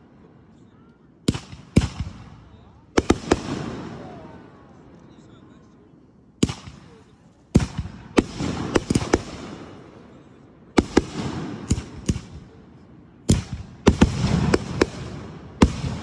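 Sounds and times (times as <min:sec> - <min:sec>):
fireworks bangs with echo: 0:01.2 - 0:04.4, 0:06.4 - 0:12.6, 0:13.2 - 0:16.0.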